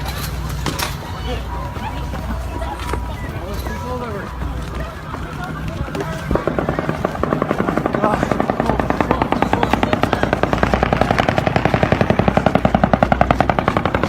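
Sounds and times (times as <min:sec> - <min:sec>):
rapid automatic gunfire: 0:06.3 - 0:14.0.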